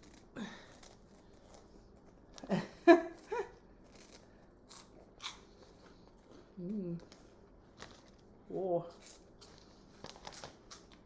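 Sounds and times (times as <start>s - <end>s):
snack bag rustling: 0.0s - 11.0s
snacks being crunched: 3.2s - 6.4s.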